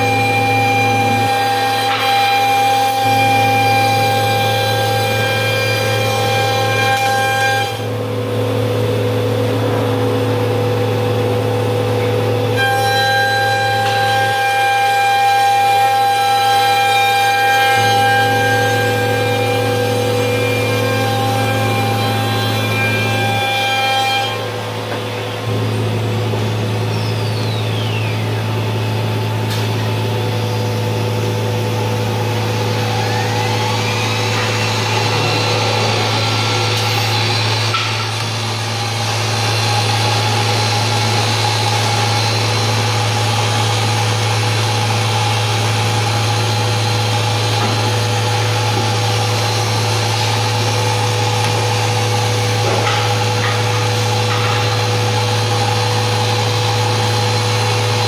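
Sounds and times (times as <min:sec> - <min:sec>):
high spindle whine: 0:00.0 - 0:58.0
router low hum: 0:17.8 - 0:58.0.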